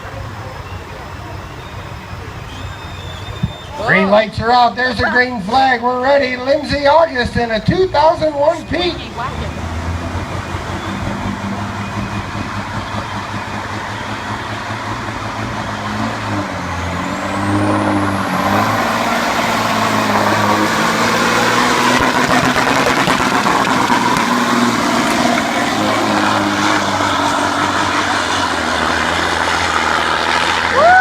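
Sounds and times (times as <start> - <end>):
diesel truck engine under load: 0.0 - 31.0
high whistle: 0.5 - 4.0, 10.6 - 29.1.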